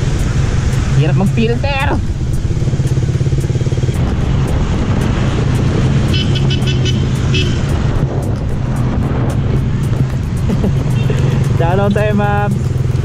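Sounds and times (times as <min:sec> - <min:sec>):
motorcycle engine running: 0:00.0 - 0:13.0
road and wind noise: 0:00.0 - 0:13.0.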